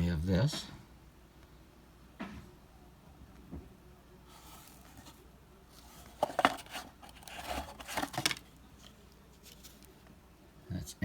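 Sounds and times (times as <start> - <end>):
box rustling: 4.3 - 5.2, 5.8 - 9.9.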